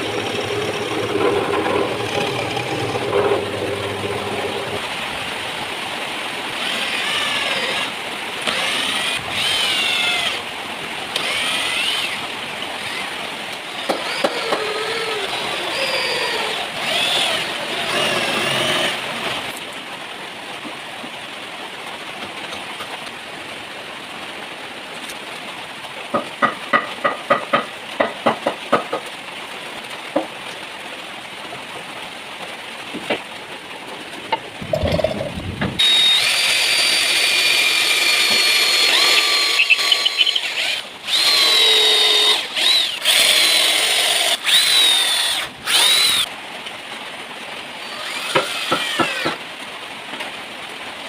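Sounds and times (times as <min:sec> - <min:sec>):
drum sander motor humming: 0:00.0 - 0:04.8, 0:35.8 - 0:43.5.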